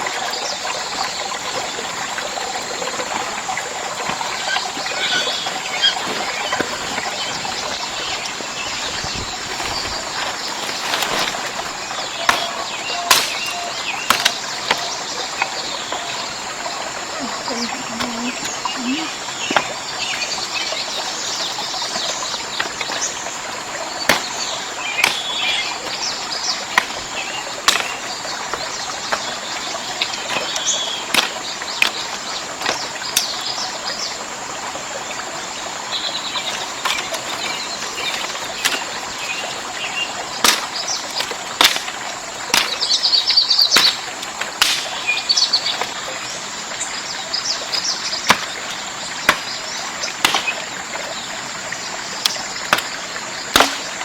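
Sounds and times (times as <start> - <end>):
birds chirping: 0.0 - 54.0
steady forest hiss: 0.0 - 54.0
sharp knocks: 12.2 - 14.8, 47.7 - 48.6, 53.5 - 53.9.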